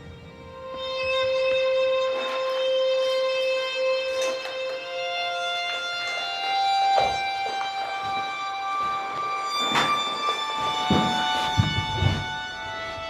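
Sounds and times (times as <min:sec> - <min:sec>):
slow violin music: 0:00.0 - 0:13.0
faint knocks: 0:06.9 - 0:12.8.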